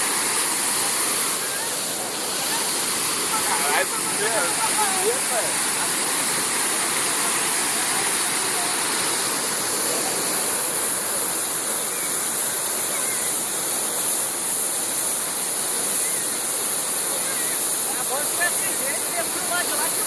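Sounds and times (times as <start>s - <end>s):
waterfall rushing: 0.0s - 20.0s.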